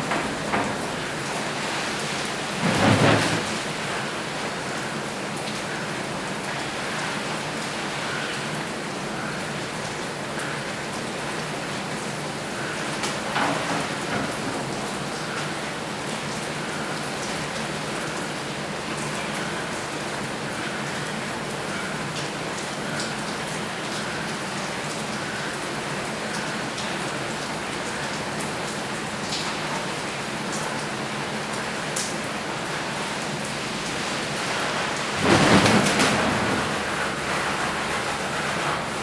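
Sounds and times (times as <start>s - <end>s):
water rushing: 31.3s - 39.0s
shower water hissing: 32.8s - 39.0s.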